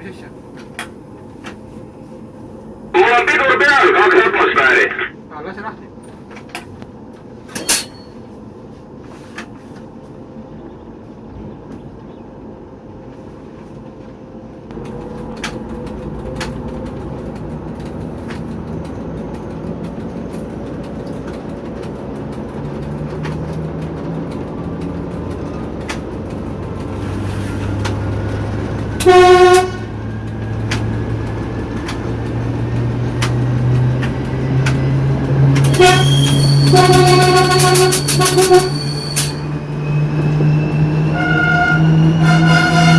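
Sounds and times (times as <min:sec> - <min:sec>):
diesel locomotive engine: 0:00.0 - 0:42.9
locomotive horn blast: 0:29.0 - 0:30.0, 0:35.6 - 0:39.5, 0:41.1 - 0:42.9
turbocharger whistle: 0:35.6 - 0:42.9.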